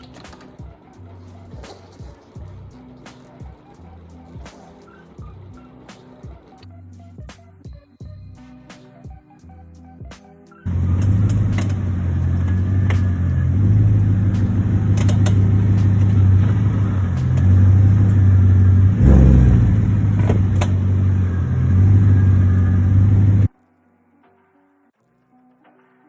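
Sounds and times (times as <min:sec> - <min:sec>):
car engine droning: 0:10.7 - 0:23.5
sharp clicks: 0:10.7 - 0:23.5.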